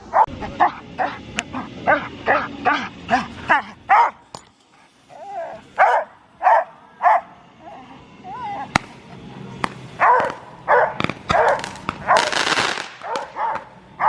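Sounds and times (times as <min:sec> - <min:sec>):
dog barking rapidly: 0:00.0 - 0:04.2, 0:05.1 - 0:07.3, 0:10.0 - 0:13.7
sharp cracks: 0:08.7 - 0:09.0, 0:09.6 - 0:13.8.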